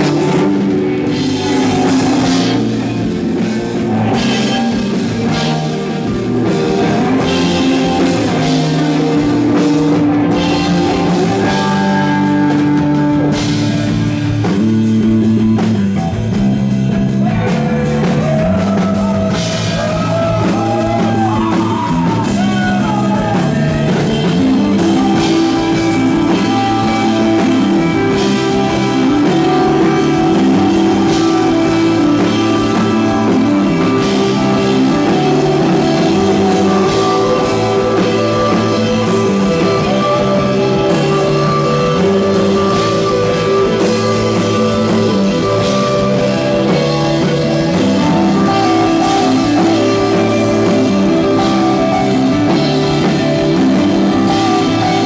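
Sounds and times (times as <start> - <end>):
bass line: 0.0 - 55.0
drum kit: 0.0 - 55.0
electric guitar lines: 0.0 - 55.0.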